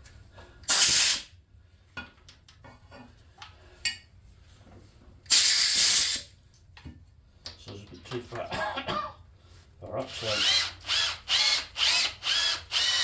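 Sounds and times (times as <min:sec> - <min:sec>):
hissing air jet blasts: 0:00.7 - 0:01.3, 0:05.3 - 0:06.3.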